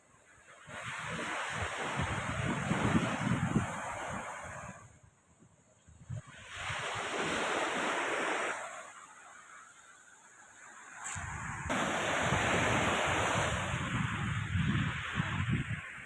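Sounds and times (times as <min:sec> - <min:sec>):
sea waves washing onto shore: 0:00.3 - 0:05.0, 0:06.2 - 0:16.0
wind buffeting microphone: 0:00.7 - 0:08.3, 0:11.0 - 0:16.0.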